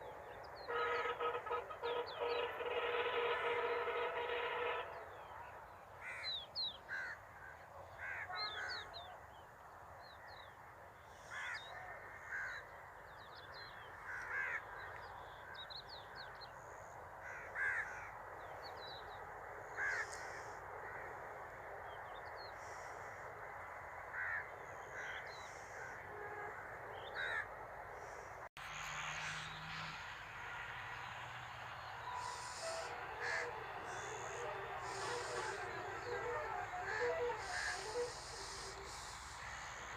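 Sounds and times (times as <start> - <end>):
crows cawing: 6.0 - 6.3, 6.9 - 8.9, 11.1 - 12.7, 14.0 - 14.8, 17.2 - 18.2, 19.6 - 21.2, 22.6 - 23.3, 24.1 - 28.4, 32.2 - 39.9
steady background hiss: 32.0 - 39.9.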